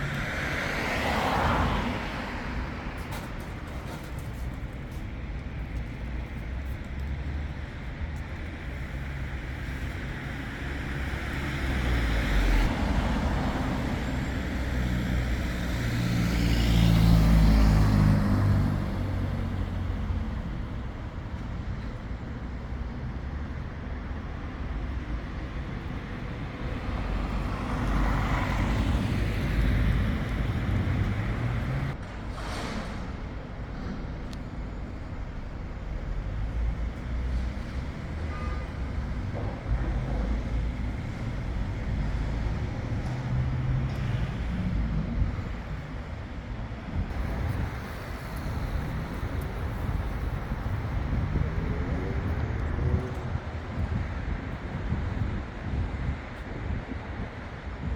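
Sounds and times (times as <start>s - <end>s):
traffic hum: 0.0s - 57.9s
vehicles passing: 0.0s - 57.9s
heavy vehicle engine: 24.3s - 57.9s.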